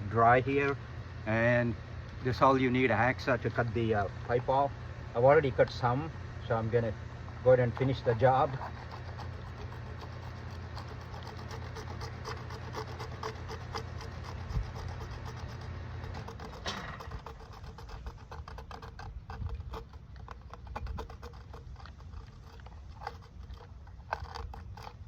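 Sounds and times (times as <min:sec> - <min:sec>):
hacksaw cutting plastic pipe: 0:07.3 - 0:25.0.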